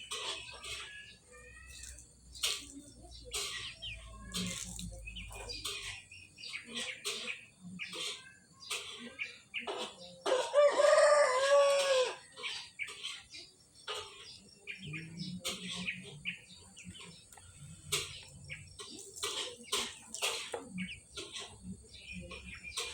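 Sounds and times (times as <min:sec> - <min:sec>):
rooster crowing: 0:10.3 - 0:12.2.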